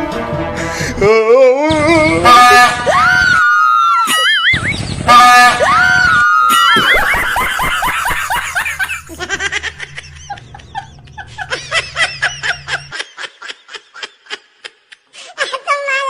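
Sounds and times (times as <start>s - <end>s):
person laughing: 6.6s - 15.8s.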